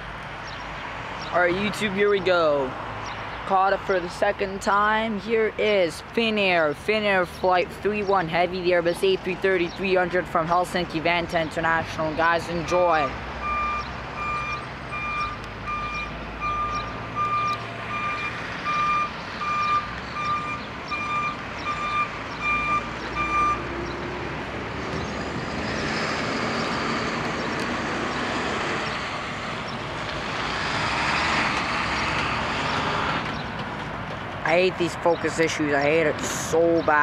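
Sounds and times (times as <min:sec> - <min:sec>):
vehicle reversing beeper: 0:13.4 - 0:23.7.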